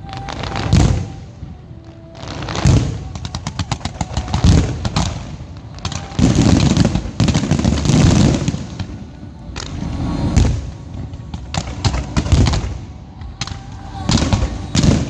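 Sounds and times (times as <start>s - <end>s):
fireworks cracking and booming: 0.0s - 15.0s.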